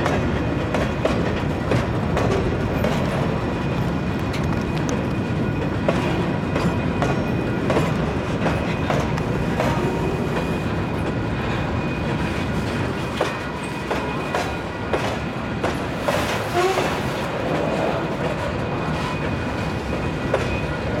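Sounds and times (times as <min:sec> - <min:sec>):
wheels clicking over rail joints: 0:00.0 - 0:11.2
freight train rolling past: 0:00.0 - 0:21.0.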